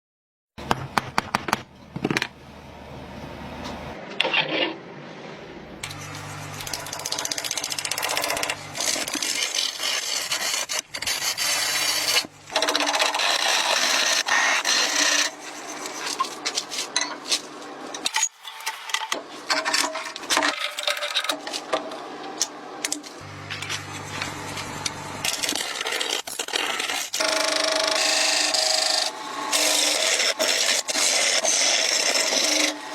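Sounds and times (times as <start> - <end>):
low motor hum: 5.0 - 9.4, 23.1 - 25.6
machine rasping: 5.8 - 17.5, 23.2 - 32.9
sharp knocks and scrapes: 5.8 - 22.0.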